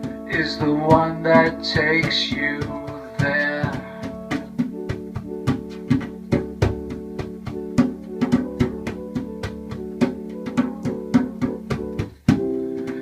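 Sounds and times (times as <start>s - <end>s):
steady percussive beat: 0.0s - 13.0s
sustained instrumental notes: 0.0s - 13.0s.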